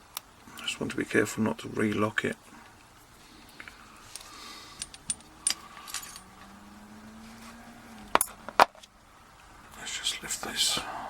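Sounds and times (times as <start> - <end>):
metallic clicks of lock and tools: 4.2 - 6.3.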